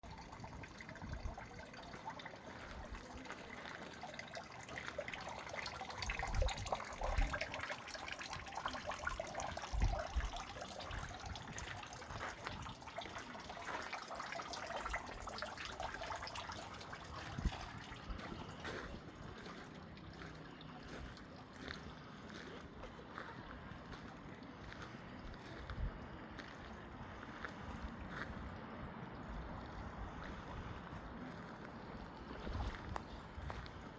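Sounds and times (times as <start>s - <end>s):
fountain splashing and trickling: 0.0s - 25.6s.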